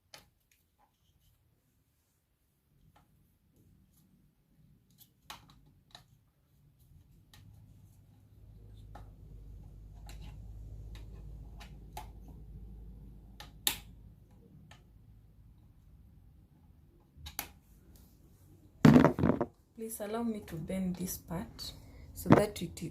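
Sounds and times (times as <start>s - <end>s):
plastic parts clicking and knocking: 4.8s - 6.2s.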